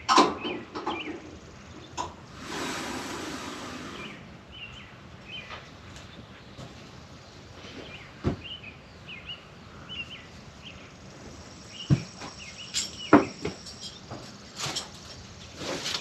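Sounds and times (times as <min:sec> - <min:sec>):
small bird chirping: 0:07.8 - 0:14.2.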